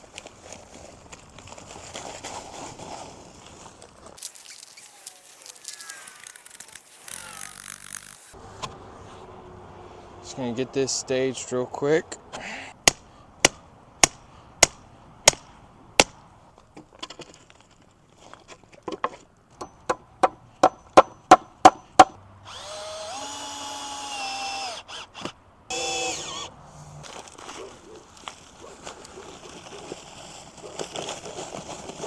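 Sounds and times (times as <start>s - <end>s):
power drill running: 6.1s - 8.4s, 22.5s - 26.5s.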